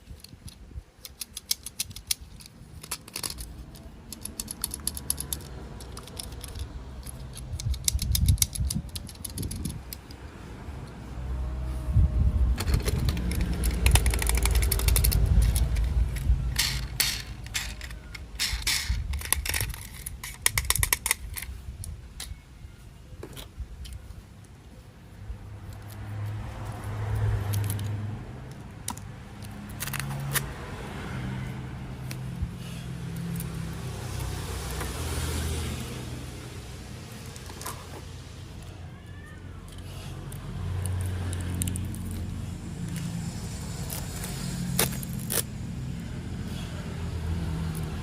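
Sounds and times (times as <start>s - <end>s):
plastic toy parts clicking: 0.0s - 10.2s, 12.6s - 22.4s, 28.5s - 30.4s, 39.7s - 42.3s.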